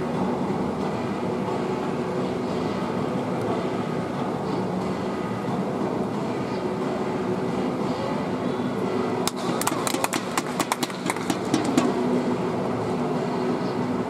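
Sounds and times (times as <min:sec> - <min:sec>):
stadium background hum: 0:00.0 - 0:14.0
sharp slaps: 0:09.2 - 0:12.0.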